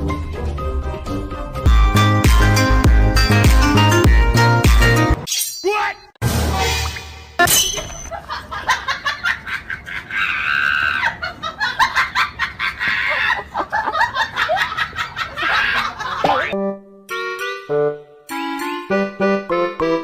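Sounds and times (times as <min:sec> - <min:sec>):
people laughing and shrieking: 0:08.7 - 0:16.6.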